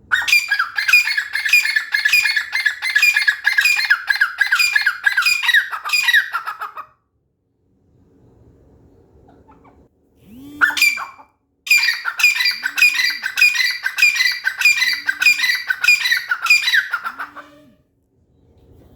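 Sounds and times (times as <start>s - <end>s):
francolin calling: 0.2s - 6.6s, 10.6s - 17.7s.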